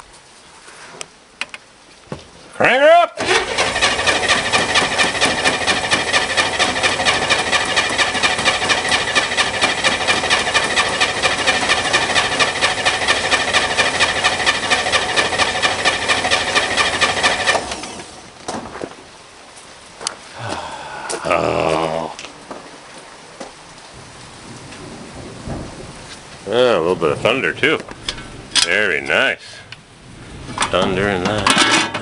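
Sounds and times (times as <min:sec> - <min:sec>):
starter motor cranking engine: 0:03.2 - 0:18.3.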